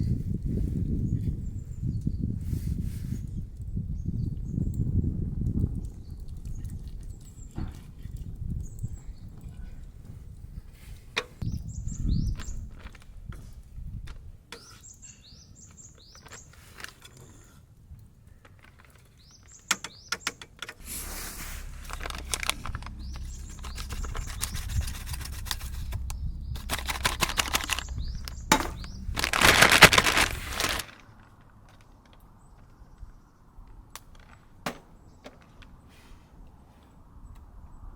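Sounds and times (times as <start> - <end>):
rustling with low rumble: 0.0 - 14.5, 20.8 - 37.8
small birds chirping: 5.7 - 13.9, 14.6 - 17.6, 18.2 - 30.9.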